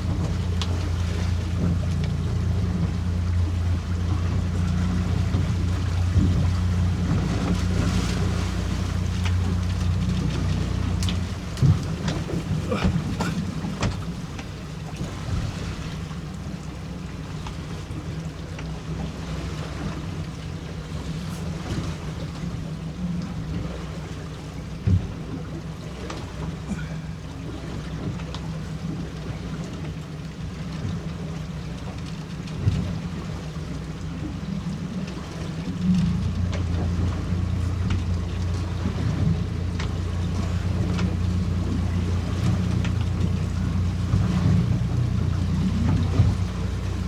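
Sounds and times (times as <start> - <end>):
outboard motor running: 0.0 - 47.0
water noise: 0.0 - 47.0
wind: 0.0 - 47.0.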